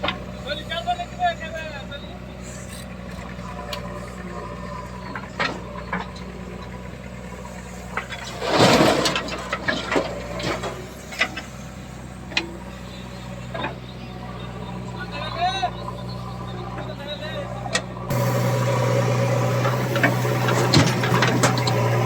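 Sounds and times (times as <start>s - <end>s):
diesel engine idling: 0.0s - 22.0s
sharp knocks and clanks: 17.8s - 22.0s
loud noisy burst: 18.1s - 22.0s.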